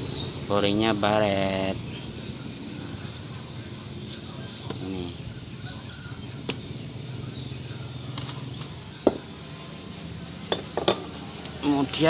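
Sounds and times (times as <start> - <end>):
engine parts clicking and knocking: 7.4 - 12.0.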